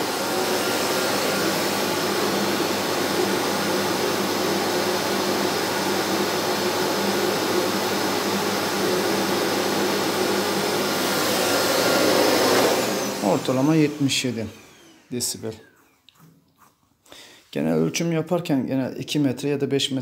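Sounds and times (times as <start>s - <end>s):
vacuum cleaner running: 0.0s - 16.1s.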